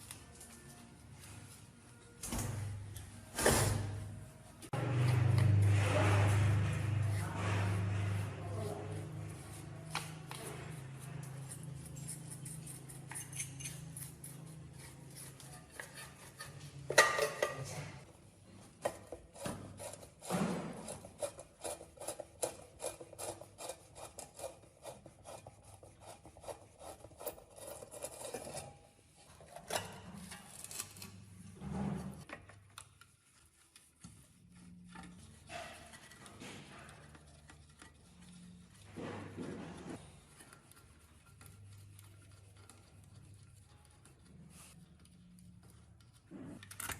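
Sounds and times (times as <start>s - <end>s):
metal tools clinking and scraping: 10.3s - 18.1s, 26.5s - 32.3s.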